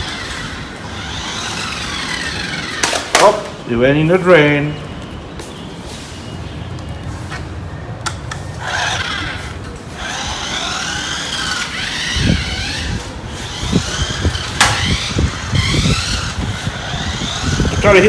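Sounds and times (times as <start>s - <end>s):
toy car electric motor whining: 0.0s - 3.2s, 8.5s - 18.0s
toy car bumping knocks: 2.8s - 3.5s, 14.6s - 15.8s.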